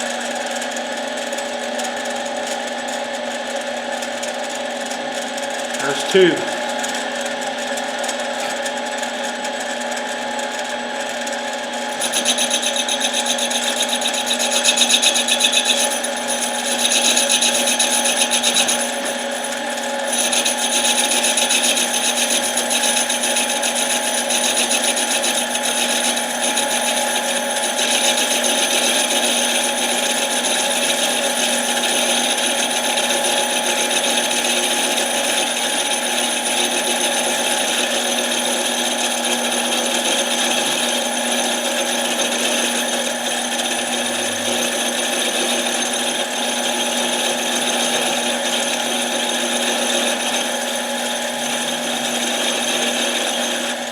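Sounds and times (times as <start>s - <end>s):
lathe motor whine: 9.4s - 53.9s
tool scraping spinning metal: 11.9s - 27.2s, 39.4s - 53.7s.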